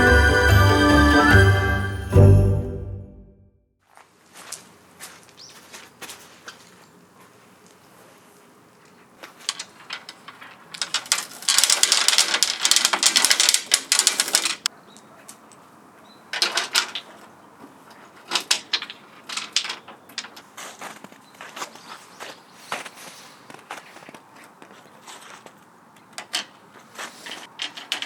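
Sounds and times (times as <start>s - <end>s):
footsteps crunching in snow: 3.8s - 8.4s, 20.5s - 25.6s.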